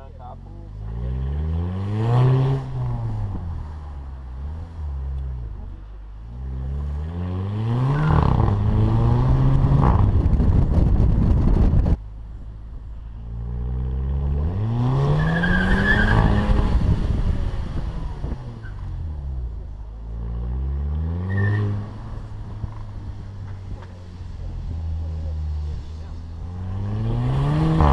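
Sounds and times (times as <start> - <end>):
car engine revving through upshifts: 0.7 - 10.5, 13.6 - 19.1, 20.2 - 27.9
exhaust crackle on shifts: 21.7 - 27.9.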